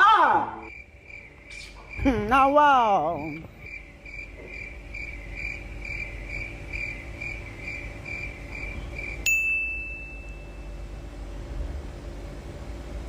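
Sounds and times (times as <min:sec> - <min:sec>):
cricket chirping: 0:00.4 - 0:11.2
bright ding: 0:09.2 - 0:10.8.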